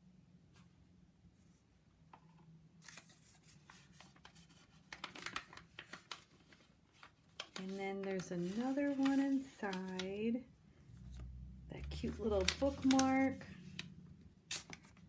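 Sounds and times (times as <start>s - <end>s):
paper packaging rustling: 2.8s - 10.3s, 11.8s - 15.0s.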